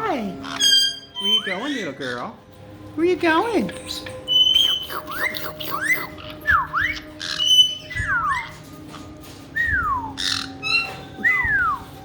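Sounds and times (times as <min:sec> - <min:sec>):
parrot harsh chirps: 0:00.2 - 0:02.4, 0:03.7 - 0:08.6, 0:10.1 - 0:11.5
parrot whistling: 0:00.2 - 0:02.4, 0:03.7 - 0:08.7, 0:09.5 - 0:12.0.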